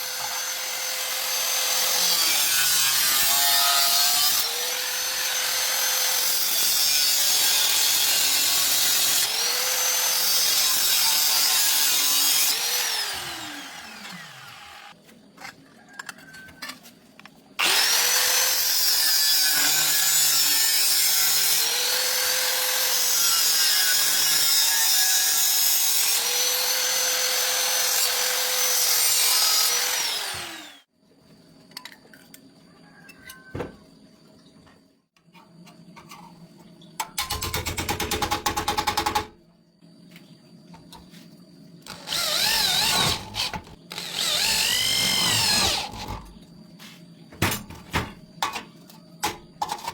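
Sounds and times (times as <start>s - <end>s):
electric power tool motor running: 12.2s - 14.9s, 29.4s - 30.8s, 41.9s - 46.2s.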